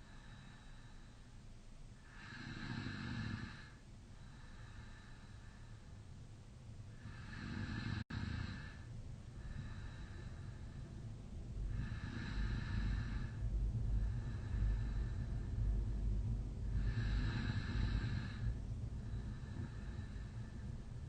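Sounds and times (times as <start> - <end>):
man snoring: 2.1 - 3.8, 7.0 - 8.9, 11.7 - 13.4, 16.8 - 18.5.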